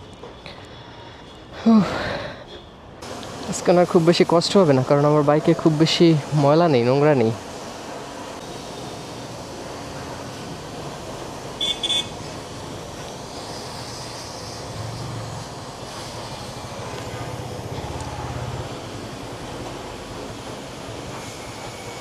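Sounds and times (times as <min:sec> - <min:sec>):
street traffic noise: 0:00.0 - 0:22.0
vehicle horn beeps: 0:11.6 - 0:12.2.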